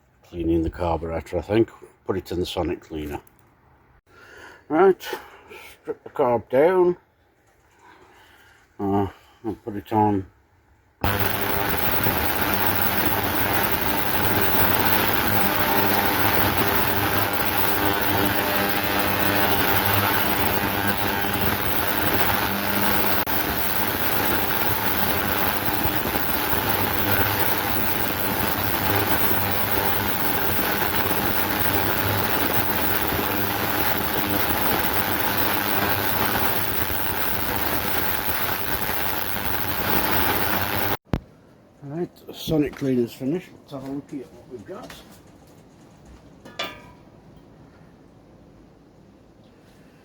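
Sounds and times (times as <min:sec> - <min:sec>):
ultrasonic cleaner humming and hissing: 0:11.0 - 0:41.0.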